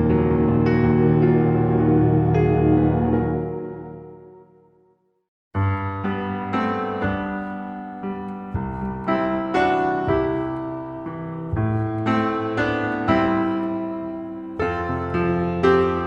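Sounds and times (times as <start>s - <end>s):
calm piano chords: 0.0s - 4.8s, 5.6s - 16.0s.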